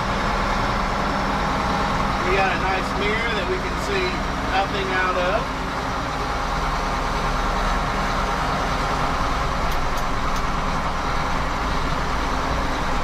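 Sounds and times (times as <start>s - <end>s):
farm vehicle engine droning: 0.0s - 13.0s
faint clicks: 9.7s - 10.6s.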